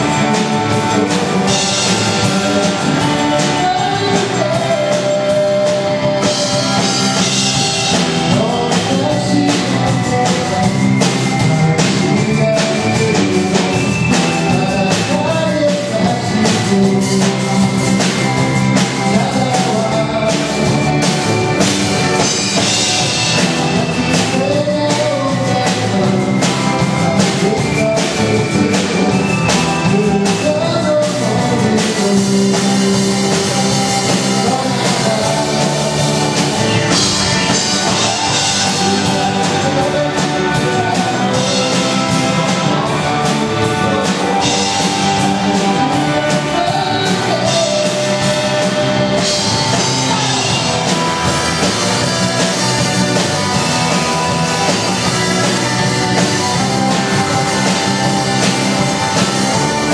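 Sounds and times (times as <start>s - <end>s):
rock song with singing: 0.0s - 59.9s.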